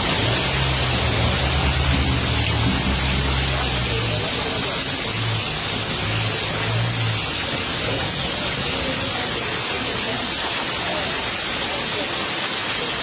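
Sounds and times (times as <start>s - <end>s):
rain hissing: 0.0s - 13.0s.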